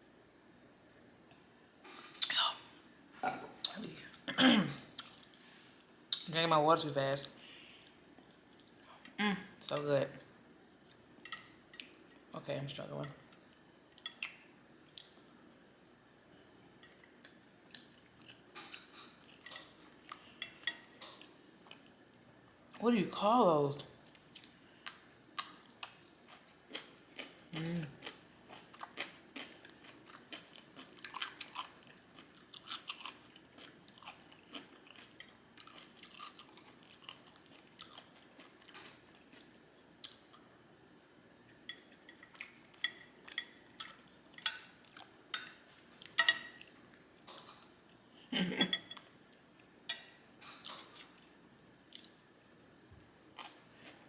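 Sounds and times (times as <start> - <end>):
chewing food: 24.2 - 40.4, 53.3 - 54.0
food crunching: 24.4 - 40.4.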